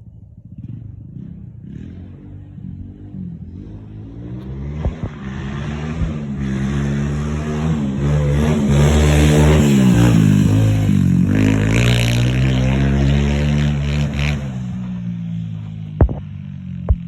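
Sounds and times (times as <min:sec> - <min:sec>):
pit bike engine revving: 0:00.6 - 0:17.0
sharp knocks: 0:16.0 - 0:16.3.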